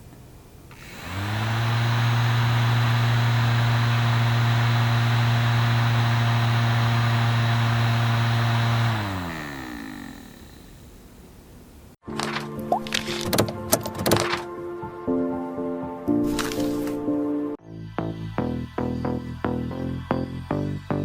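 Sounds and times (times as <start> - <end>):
motor hum: 0.7 - 11.9.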